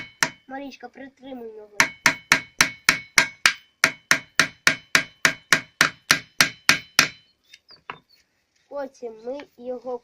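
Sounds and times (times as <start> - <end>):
hammer driving a nail into wood: 0.0 - 0.4, 1.8 - 7.2.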